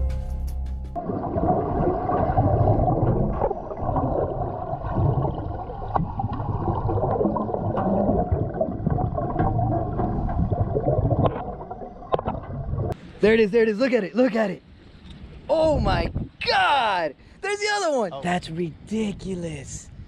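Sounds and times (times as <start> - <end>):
water churning around boat: 1.0 - 13.5.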